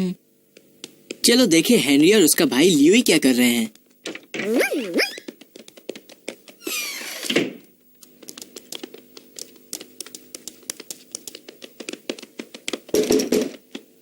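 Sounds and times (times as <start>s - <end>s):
cartoon falling swoosh: 4.4s - 5.3s
quick light taps: 8.0s - 12.9s.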